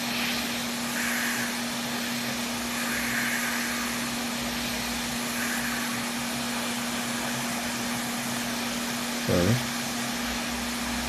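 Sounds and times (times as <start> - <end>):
hot air station hissing: 0.0 - 11.0.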